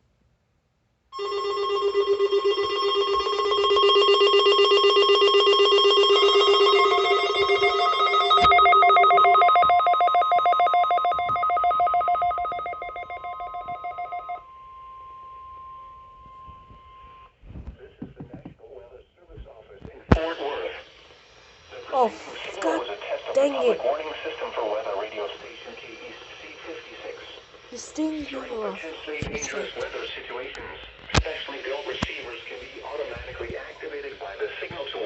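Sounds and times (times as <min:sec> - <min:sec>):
steady alarm tone: 0:01.2 - 0:17.3, 0:20.9 - 0:24.2, 0:25.9 - 0:30.1.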